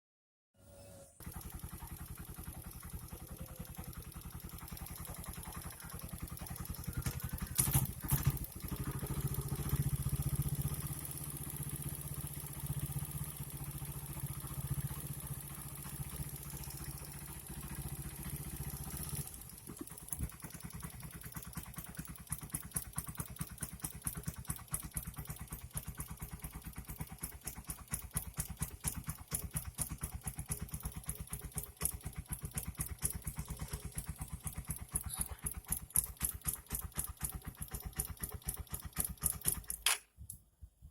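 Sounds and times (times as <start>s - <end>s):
motorcycle engine clattering: 1.2s - 40.0s.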